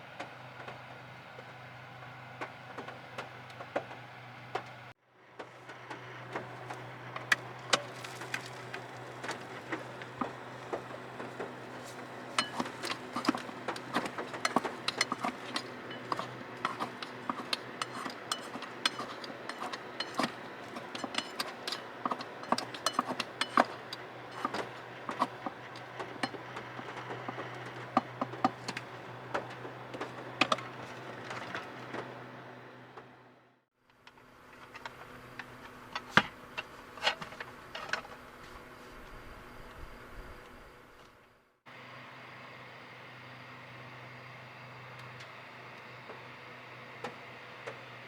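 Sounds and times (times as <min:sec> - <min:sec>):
steady low hum: 0:06.5 - 0:32.9.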